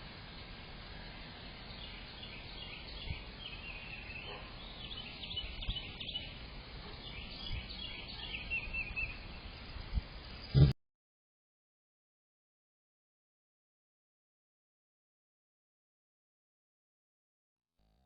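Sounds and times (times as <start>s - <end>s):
steady background hiss: 0.0s - 10.7s
small birds chirping: 0.2s - 10.7s.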